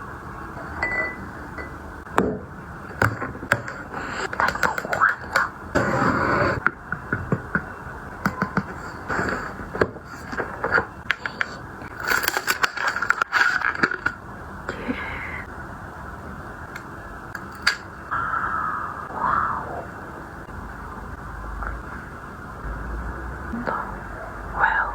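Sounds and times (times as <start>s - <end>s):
objects clicking and tapping: 6.6s - 9.1s
packaging scraping and rustling: 8.8s - 14.2s.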